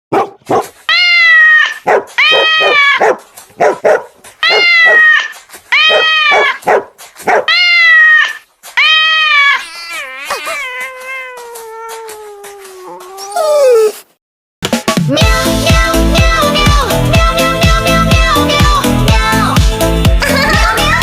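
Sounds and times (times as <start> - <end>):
kitten mewing: 4.4 - 6.7, 7.5 - 14.0.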